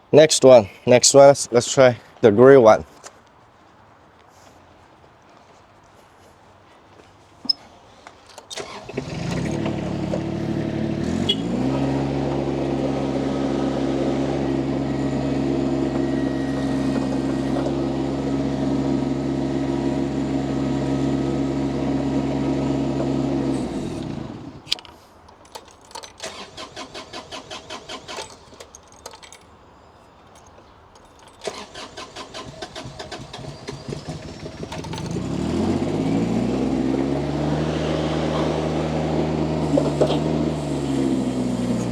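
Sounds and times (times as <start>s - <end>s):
starter motor cranking: 8.3s - 29.5s, 30.3s - 41.9s
loader engine running: 8.5s - 41.9s.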